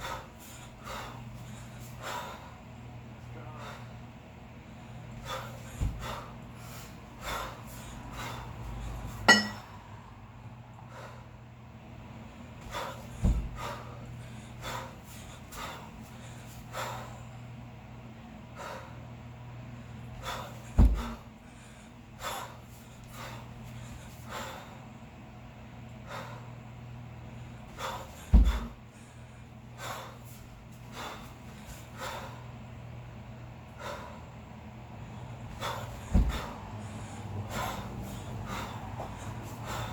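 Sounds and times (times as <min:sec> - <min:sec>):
sharp forceful breathing: 0:00.0 - 0:02.6, 0:04.7 - 0:09.9, 0:12.6 - 0:17.3, 0:27.7 - 0:32.6, 0:33.7 - 0:39.9
steady low hum: 0:00.0 - 0:39.9
kettlebells thudding: 0:05.6 - 0:06.3, 0:09.2 - 0:09.7, 0:13.1 - 0:13.6, 0:20.7 - 0:21.2, 0:28.2 - 0:28.8, 0:35.4 - 0:39.9.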